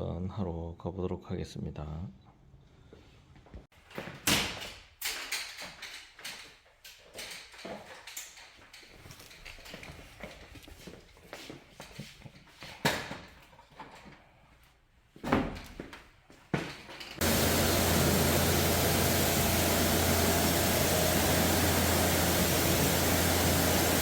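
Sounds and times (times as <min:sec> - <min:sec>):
knocks and clatter of handled objects: 0:03.9 - 0:14.4.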